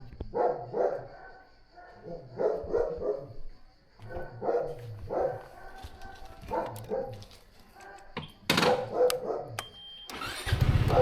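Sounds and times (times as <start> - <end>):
dog barking: 0.3 - 3.4, 4.0 - 9.6, 10.8 - 11.0.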